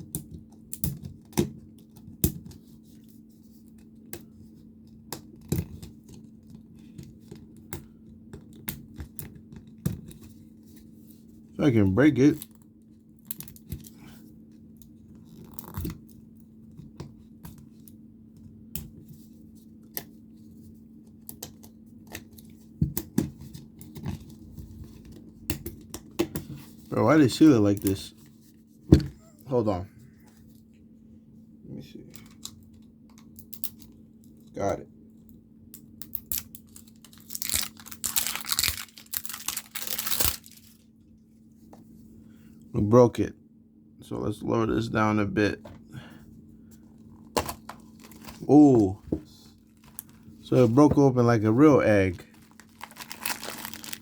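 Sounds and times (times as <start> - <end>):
faint steady hum: 0.0 - 54.0
plastic tearing: 36.2 - 40.8, 47.4 - 48.5, 52.2 - 54.0.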